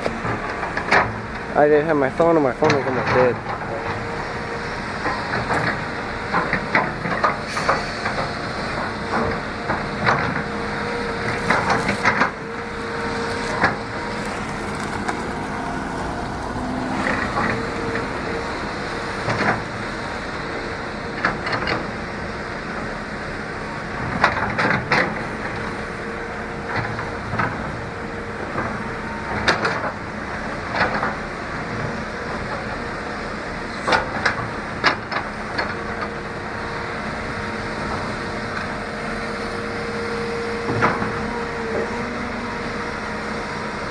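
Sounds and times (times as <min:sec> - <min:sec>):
excavator engine: 0:00.0 - 0:43.9
wood and debris cracking: 0:11.2 - 0:18.1.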